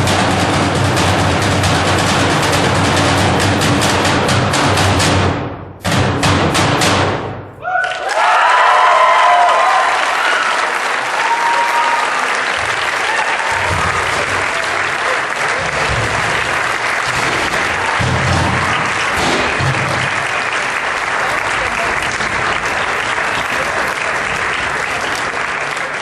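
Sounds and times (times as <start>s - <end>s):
audience applauding: 7.6s - 26.0s.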